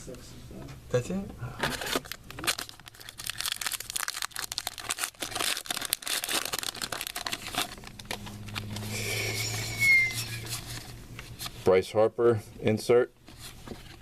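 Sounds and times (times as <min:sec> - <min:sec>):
card wrappers crinkling and tearing: 0:01.6 - 0:11.6
low hum: 0:07.5 - 0:11.1.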